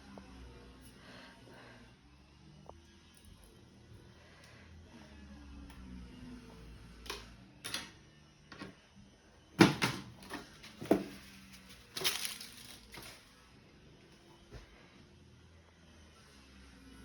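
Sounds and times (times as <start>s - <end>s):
rustling scrape: 10.7s - 13.3s.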